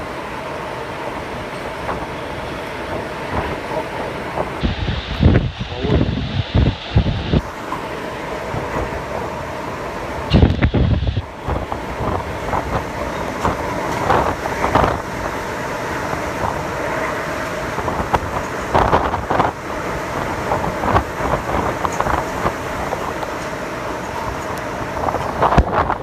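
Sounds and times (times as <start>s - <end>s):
strong wind gusts buffeting microphone: 0.0s - 26.0s
deep rumble: 4.4s - 7.5s, 10.3s - 15.1s.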